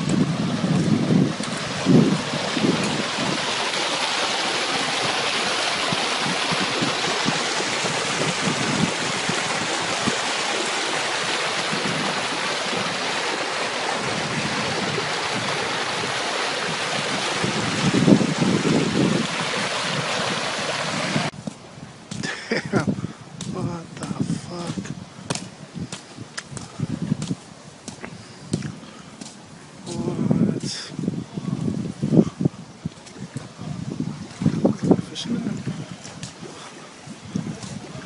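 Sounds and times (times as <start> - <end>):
floodwater rushing: 0.0 - 21.4, 31.6 - 38.0.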